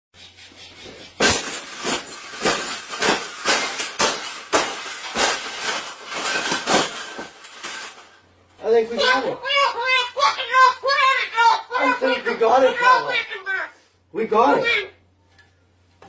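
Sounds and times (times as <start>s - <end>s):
loud rattling knocks: 1.2s - 8.0s.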